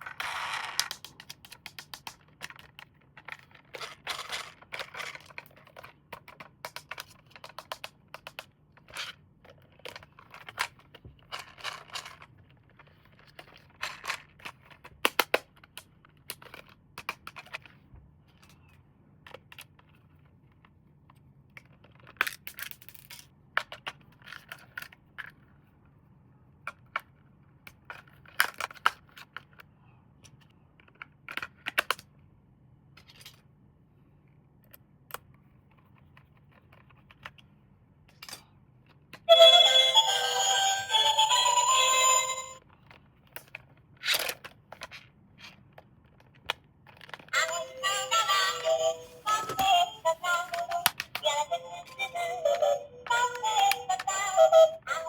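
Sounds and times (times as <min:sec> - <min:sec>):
plastic toys clicking: 0:00.5 - 0:10.8.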